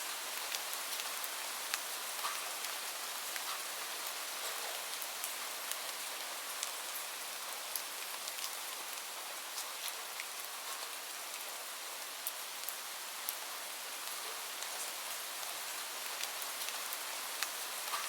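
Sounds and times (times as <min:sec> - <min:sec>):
raindrops pattering on hard surface: 0:14.0 - 0:18.0.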